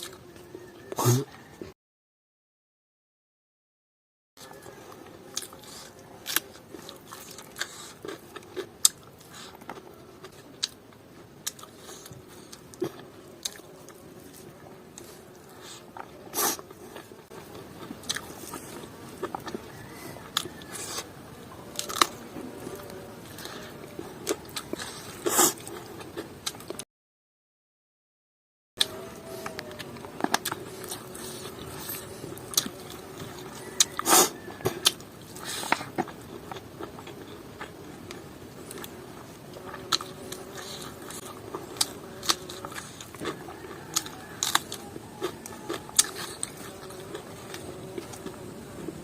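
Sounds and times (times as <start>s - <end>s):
person chewing food: 4.4s - 26.8s, 28.8s - 49.0s
crunching bites: 39.6s - 48.4s.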